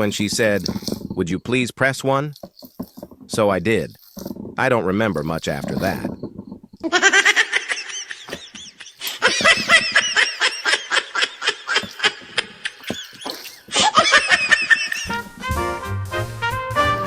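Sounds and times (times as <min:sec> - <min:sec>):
canned laughter: 0:06.8 - 0:15.4.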